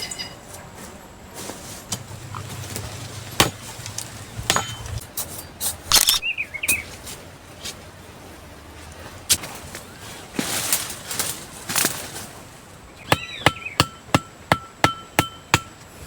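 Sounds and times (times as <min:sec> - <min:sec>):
bird chirping: 0:02.0 - 0:06.9, 0:12.9 - 0:14.1
axe chopping wood: 0:03.3 - 0:03.7, 0:04.4 - 0:05.0, 0:13.1 - 0:15.8.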